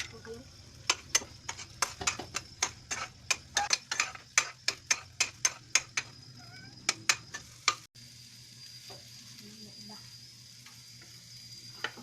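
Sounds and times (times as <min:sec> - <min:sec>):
utensil clicking against cookware: 0:00.8 - 0:06.1.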